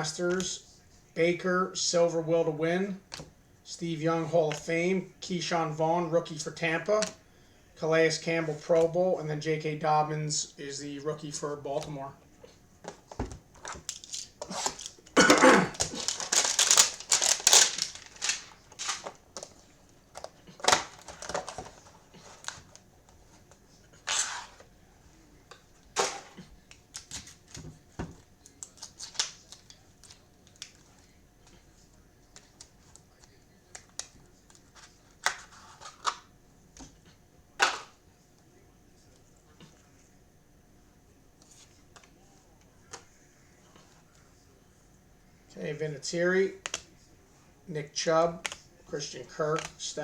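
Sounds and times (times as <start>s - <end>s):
cards rustling and tapping: 4.2s - 4.8s, 11.7s - 24.7s, 25.5s - 38.0s, 46.5s - 47.0s, 48.3s - 50.0s
box packaging crinkling and ripping: 13.6s - 19.5s.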